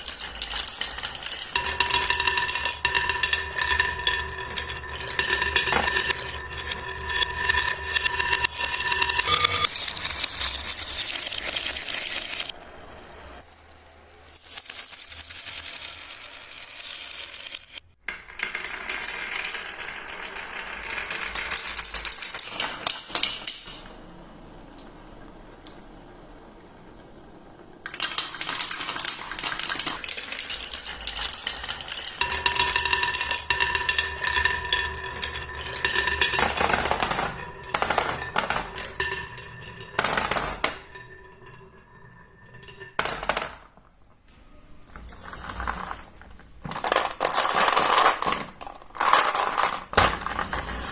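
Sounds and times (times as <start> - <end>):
marbles clattering down wooden run: 0.0 - 12.5, 14.3 - 22.5, 27.9 - 43.9, 45.0 - 50.9
steady tones: 2.6 - 14.4.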